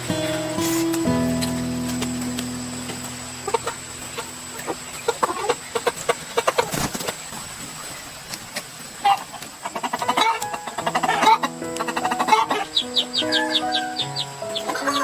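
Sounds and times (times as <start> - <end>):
music track: 0.0 - 5.9, 9.8 - 15.0
chickens clucking: 0.0 - 15.0.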